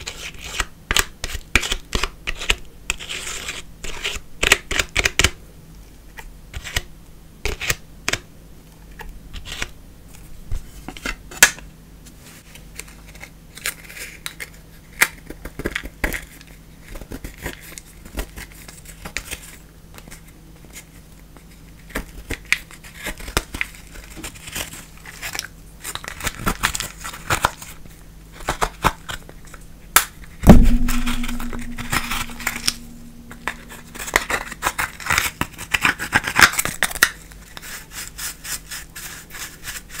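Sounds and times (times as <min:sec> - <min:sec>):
loud knock: 0:30.5 - 0:33.9
steady low hum: 0:30.5 - 0:34.8.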